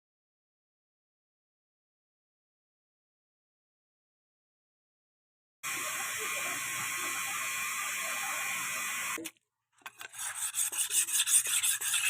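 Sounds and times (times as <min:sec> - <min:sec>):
blade rubbing against file: 0:09.9 - 0:12.0.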